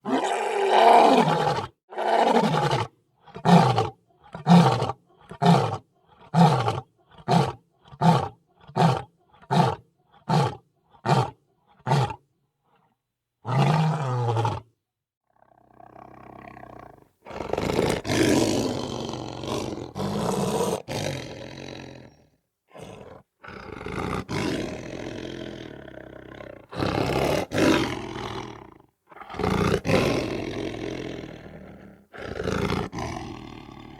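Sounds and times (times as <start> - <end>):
lion roaring: 15.8 - 33.9.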